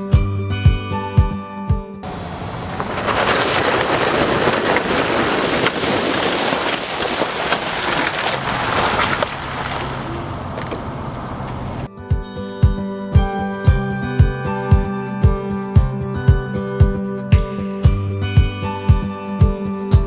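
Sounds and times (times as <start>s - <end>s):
vehicle splashing through mud: 2.2s - 11.8s.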